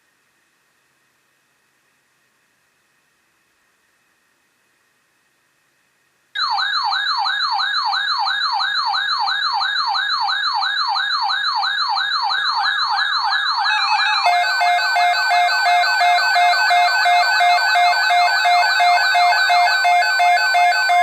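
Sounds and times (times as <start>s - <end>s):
electronic yelp siren: 6.4s - 21.0s.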